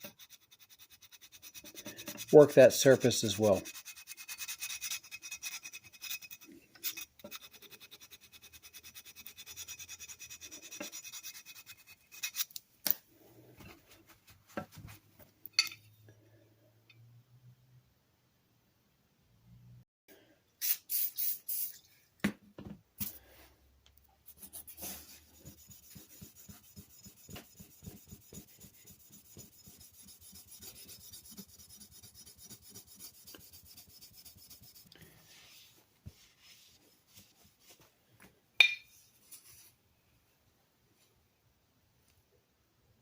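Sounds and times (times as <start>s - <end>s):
sandpaper rubbing on metal: 0.0s - 12.5s, 24.3s - 35.6s.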